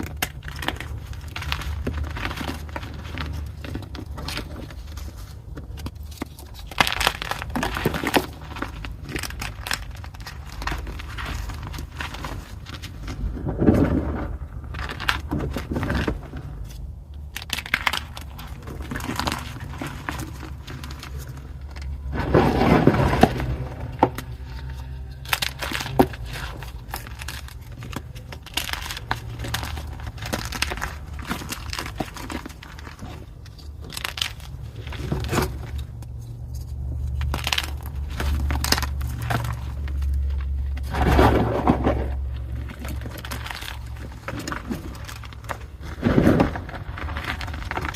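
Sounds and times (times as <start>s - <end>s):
chalk crunching and crackling: 0.0s - 47.9s.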